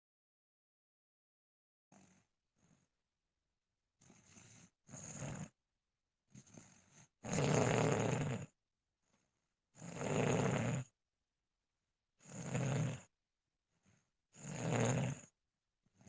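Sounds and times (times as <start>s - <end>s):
rasping snoring: 1.9s - 2.9s, 4.0s - 5.6s, 6.3s - 8.6s, 9.8s - 11.0s, 12.2s - 13.1s, 13.8s - 15.4s.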